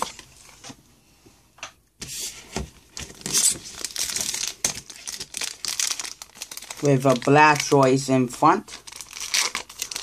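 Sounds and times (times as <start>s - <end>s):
foil wrapper crinkling: 3.0s - 10.0s.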